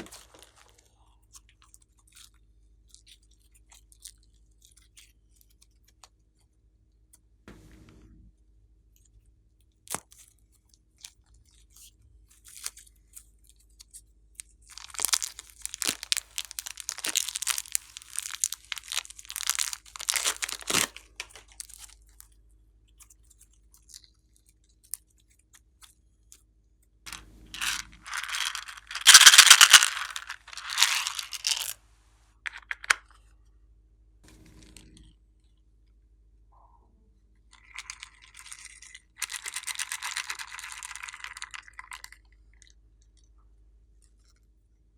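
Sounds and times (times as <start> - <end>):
slime squished by hand: 14.7 - 21.6.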